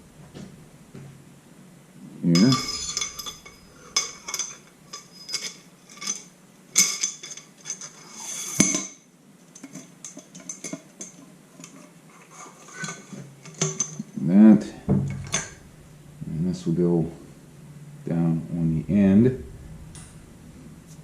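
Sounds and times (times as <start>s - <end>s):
metal scrape and knock: 2.3s - 6.3s, 14.7s - 16.0s
metal parts clinking: 2.3s - 8.0s, 15.1s - 15.7s.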